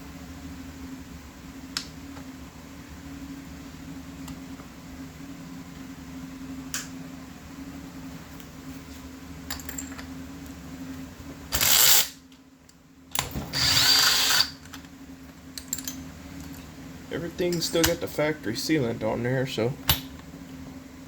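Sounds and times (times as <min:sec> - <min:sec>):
power drill whining: 0:13.5 - 0:14.6.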